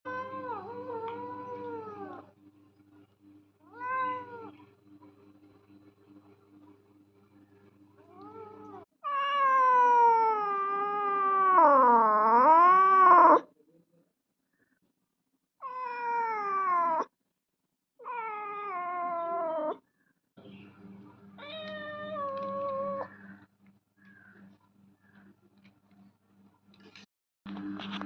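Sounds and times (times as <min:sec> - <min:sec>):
cat yowling: 0:00.1 - 0:02.3, 0:03.7 - 0:04.6, 0:08.1 - 0:13.5, 0:15.6 - 0:17.1, 0:18.0 - 0:19.8, 0:21.4 - 0:23.2.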